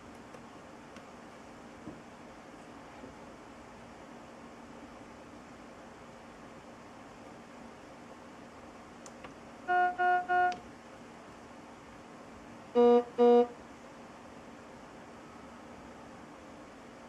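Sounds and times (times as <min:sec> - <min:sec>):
patient monitor alarm beeps: 0:12.8 - 0:13.5.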